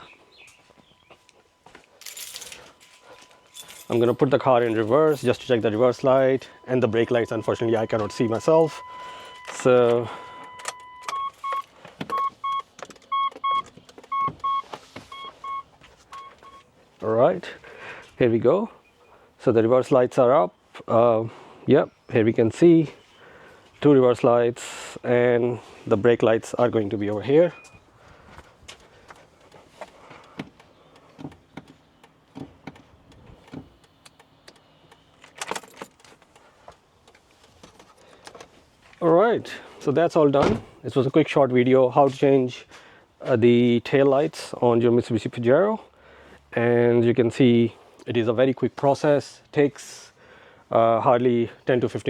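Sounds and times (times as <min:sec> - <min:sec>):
reversing beeper short high beeps: 0:05.6 - 0:16.6
faint handling clicks and knocks: 0:08.8 - 0:16.7, 0:27.6 - 0:39.0.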